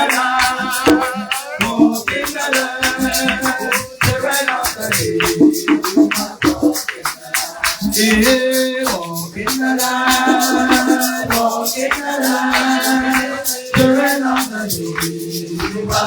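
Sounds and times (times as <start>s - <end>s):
shaker-like percussion: 0.0s - 16.0s
voices singing held notes: 0.0s - 16.0s.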